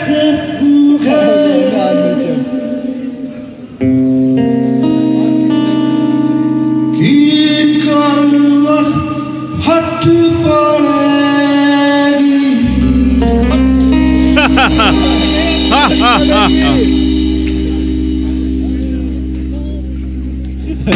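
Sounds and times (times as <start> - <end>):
man singing: 0.0 - 3.7, 6.9 - 13.8, 14.4 - 17.0
rock band playing: 3.8 - 7.0, 12.5 - 20.9.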